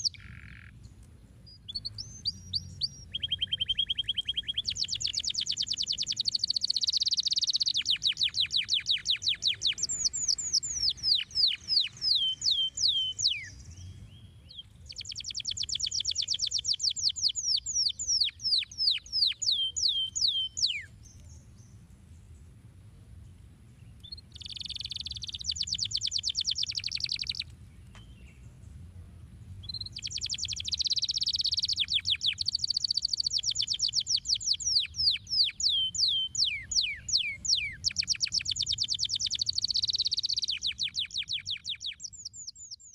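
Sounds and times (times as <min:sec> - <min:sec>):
canary singing trills: 0:00.0 - 0:21.7, 0:24.0 - 0:28.4, 0:29.6 - 0:42.9.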